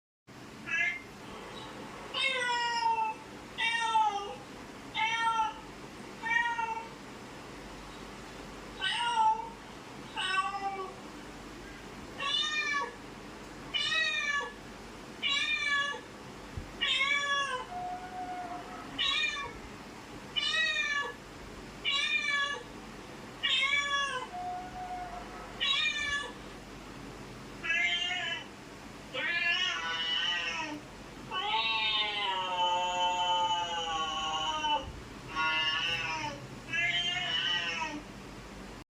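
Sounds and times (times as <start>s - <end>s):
cats meowing and yowling: 2.1s - 5.6s, 6.2s - 6.9s, 8.8s - 11.0s, 12.2s - 13.0s, 13.7s - 14.6s, 15.2s - 16.1s, 16.8s - 19.6s, 20.4s - 21.2s, 21.8s - 22.7s, 23.4s - 26.4s, 27.6s - 28.5s, 29.1s - 38.0s.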